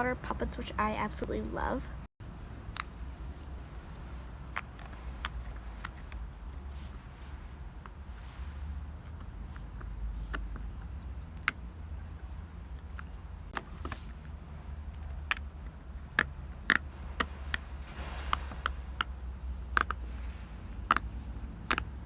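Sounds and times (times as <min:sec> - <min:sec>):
city traffic rumble: 0:00.0 - 0:22.0
small toys clicking and tapping: 0:19.7 - 0:22.0.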